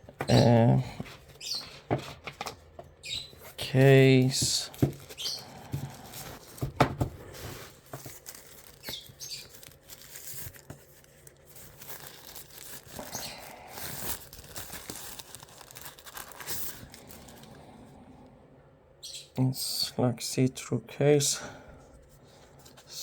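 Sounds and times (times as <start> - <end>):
plastic packaging crinkling: 3.4 - 17.6.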